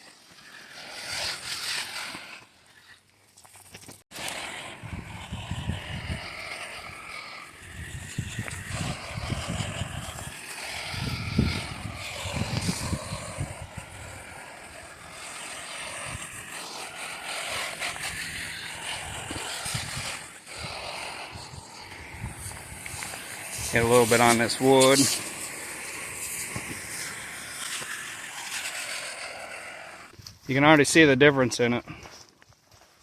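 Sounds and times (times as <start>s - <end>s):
steady hiss: 0.0s - 2.6s, 4.1s - 31.8s
wind buffeting microphone: 4.4s - 29.5s.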